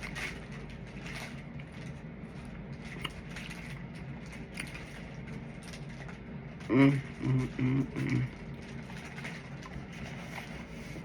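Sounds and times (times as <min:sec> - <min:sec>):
steady low hum: 0:00.0 - 0:11.0
person chewing food: 0:02.8 - 0:05.9.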